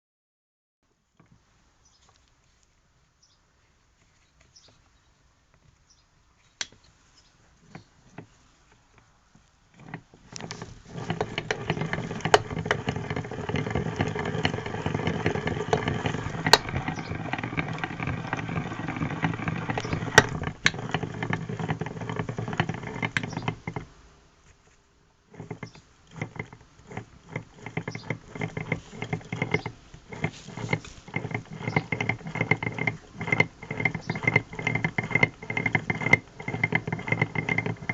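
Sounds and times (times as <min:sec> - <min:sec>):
engine running: 0:10.3 - 0:23.9, 0:25.3 - 0:37.9.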